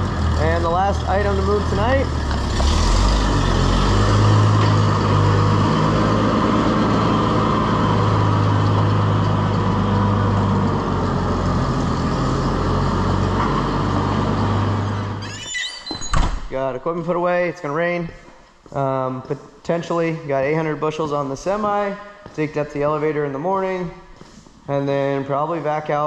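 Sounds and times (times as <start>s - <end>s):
farm vehicle engine humming: 0.0s - 15.2s.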